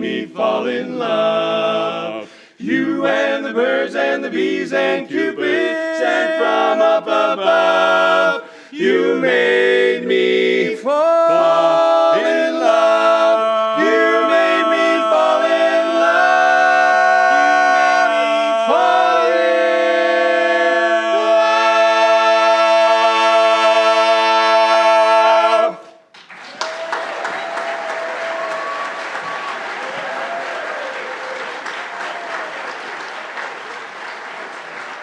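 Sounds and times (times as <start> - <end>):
barbershop quartet singing: 0.0 - 25.8
applause: 26.1 - 35.0.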